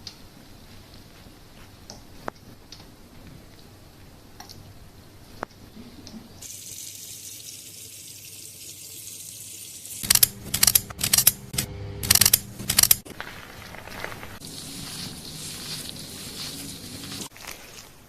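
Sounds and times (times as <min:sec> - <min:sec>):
water spraying over hair: 0:13.6 - 0:18.0.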